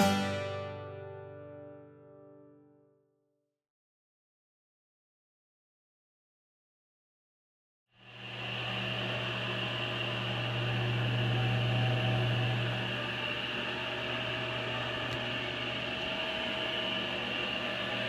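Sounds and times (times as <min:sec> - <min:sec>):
table saw motor hum: 0:08.0 - 0:18.0.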